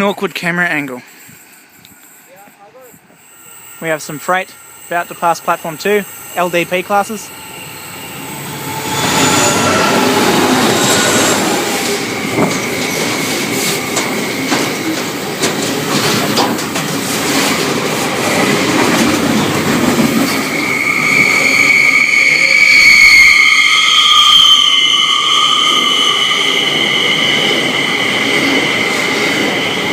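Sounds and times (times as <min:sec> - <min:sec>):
freight train rumbling: 0:00.0 - 0:23.4, 0:24.5 - 0:29.9
high-pitched wheel squeal: 0:03.2 - 0:14.9, 0:20.2 - 0:29.9
wheels clicking over rail joints: 0:12.4 - 0:20.4.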